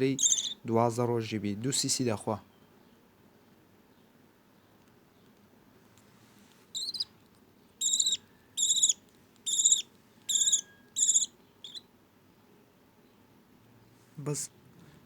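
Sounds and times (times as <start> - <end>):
budgie chick begging chirps: 0.1 - 0.6, 6.7 - 7.1, 7.8 - 11.9.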